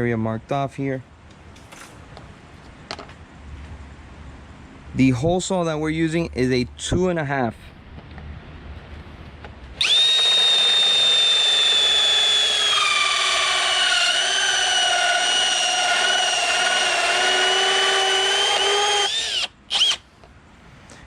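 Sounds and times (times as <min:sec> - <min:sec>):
power drill whining: 0:09.8 - 0:20.0.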